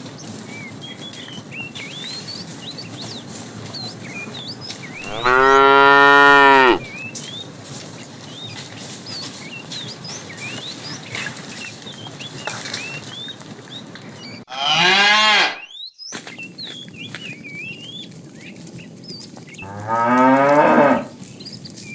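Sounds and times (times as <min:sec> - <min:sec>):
cows mooing: 0:05.0 - 0:06.9, 0:14.5 - 0:15.6, 0:19.6 - 0:21.2.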